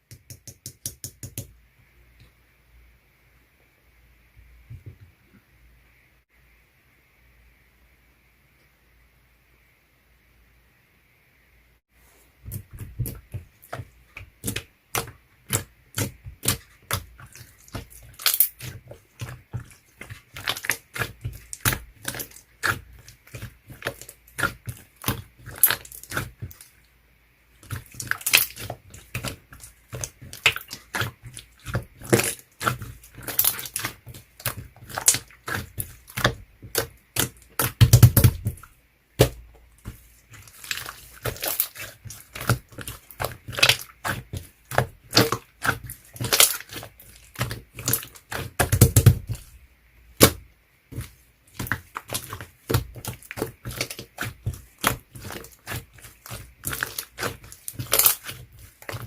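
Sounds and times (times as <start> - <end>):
slime squish: 12.4 - 59.0
slime clicking and popping: 27.7 - 38.6.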